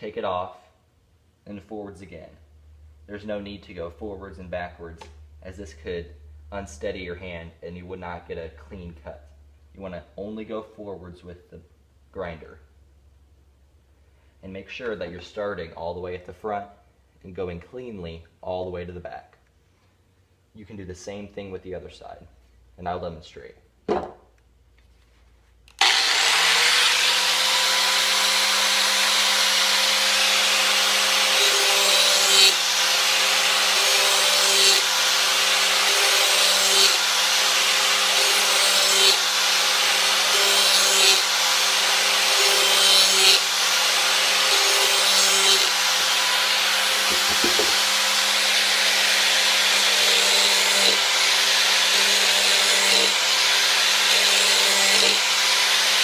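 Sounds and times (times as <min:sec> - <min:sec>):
angle grinder grinding steel: 0:25.8 - 0:56.0.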